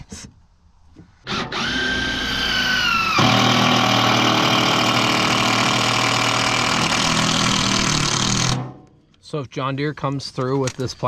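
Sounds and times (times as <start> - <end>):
power tool motor running: 1.2 - 8.7.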